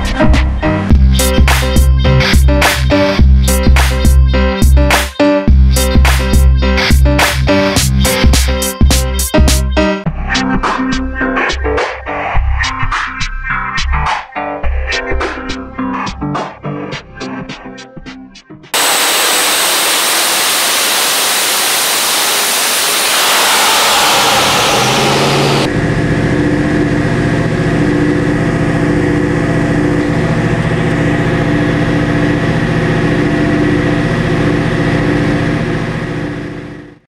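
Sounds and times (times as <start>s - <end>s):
loud rushing hiss: 18.8s - 25.7s
engine idling: 18.8s - 37.0s.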